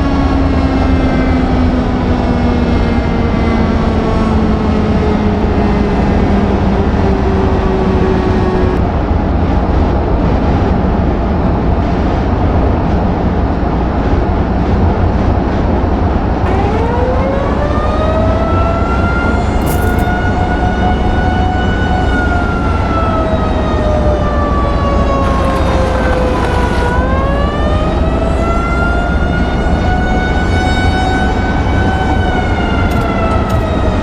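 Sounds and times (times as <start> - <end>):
warning siren wailing: 16.5 - 34.0.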